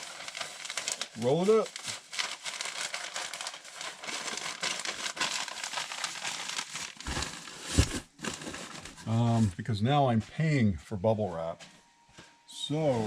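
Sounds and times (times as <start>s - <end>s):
paper and bubble wrap crinkling: 0.0s - 9.7s, 12.6s - 13.0s.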